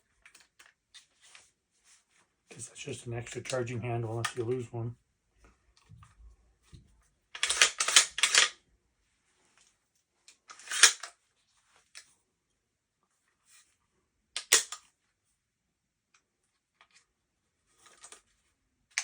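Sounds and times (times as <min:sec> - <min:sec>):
shotgun parts clicking and rattling: 0:07.4 - 0:08.6, 0:10.4 - 0:11.1, 0:14.4 - 0:14.9.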